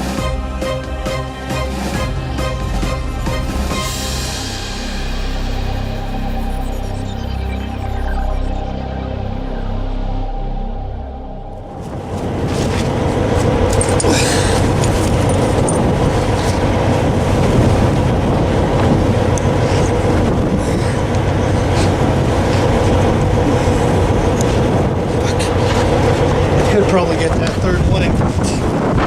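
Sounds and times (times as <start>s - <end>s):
diesel truck engine idling: 8.8s - 27.8s
metallic clinks of tire chains: 13.7s - 16.0s.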